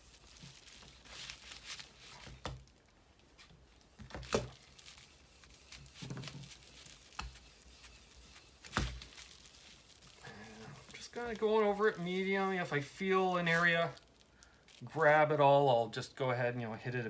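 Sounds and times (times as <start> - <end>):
steel wool scrubbing wood: 4.5 - 13.9.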